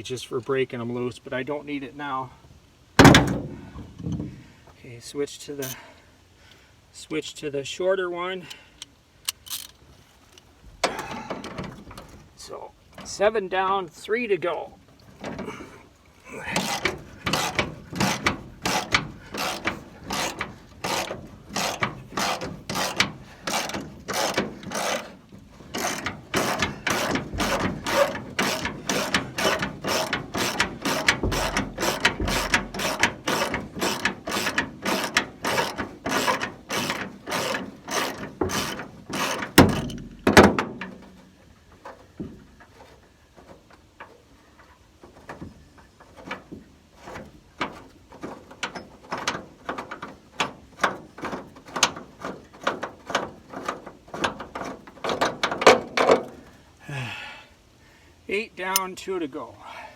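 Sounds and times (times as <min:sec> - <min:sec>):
hand socket ratchet clicking: 0:09.2 - 0:09.8
loud knocks: 0:25.8 - 0:40.8.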